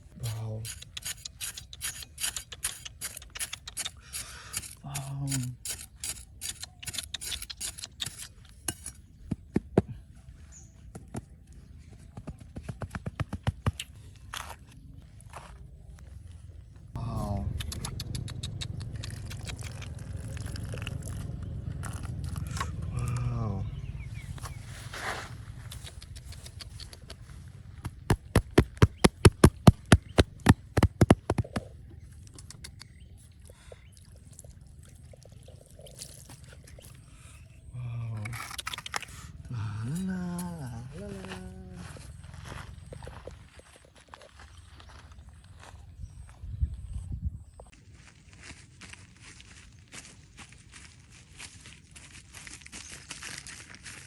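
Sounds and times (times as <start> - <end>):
rhythmic scraping strokes: 0.0 - 9.0
rapid sharp knocks: 28.1 - 31.6.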